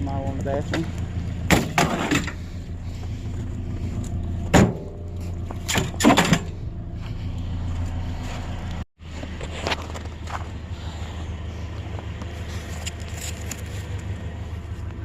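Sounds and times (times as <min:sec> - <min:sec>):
vehicle engine humming: 0:00.0 - 0:15.0
sharp thump: 0:04.5 - 0:05.0.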